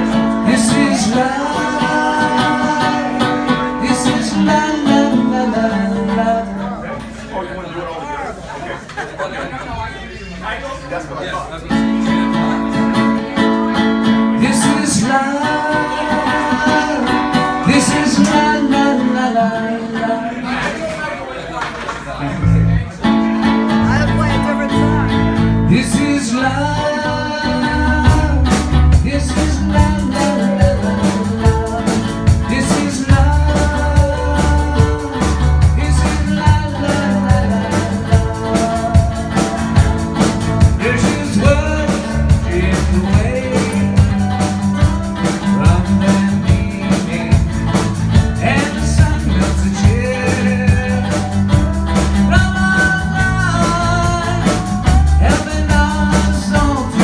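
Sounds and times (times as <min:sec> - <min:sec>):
person singing: 0:00.0 - 0:06.6, 0:13.6 - 0:20.4, 0:23.9 - 0:57.0
bass guitar: 0:00.0 - 0:06.7, 0:22.3 - 0:57.0
guitar: 0:00.0 - 0:09.0, 0:09.7 - 0:57.0
steady drum beat: 0:23.6 - 0:25.6, 0:27.9 - 0:57.0.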